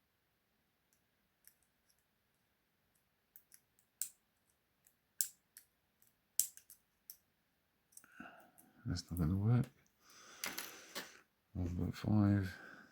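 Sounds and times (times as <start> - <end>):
lock picks clicking in padlock: 5.2 - 7.2.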